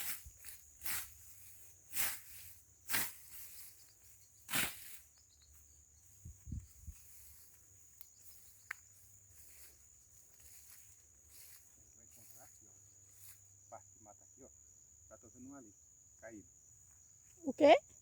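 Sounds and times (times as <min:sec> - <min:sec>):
footsteps crunching through leaves: 0:06.9 - 0:12.5.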